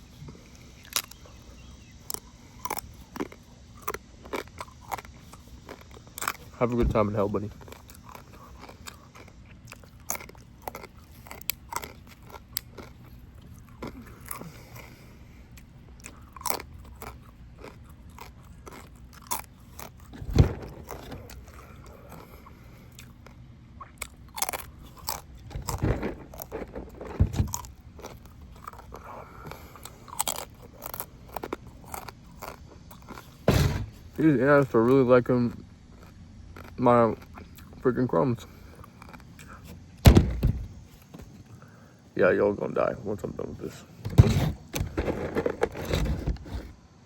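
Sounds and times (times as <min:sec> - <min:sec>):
person chewing and crunching: 0:00.0 - 0:33.4, 0:34.0 - 0:40.0
thump: 0:20.1 - 0:21.4, 0:25.5 - 0:27.7, 0:33.4 - 0:34.0, 0:40.0 - 0:40.8, 0:44.0 - 0:45.3.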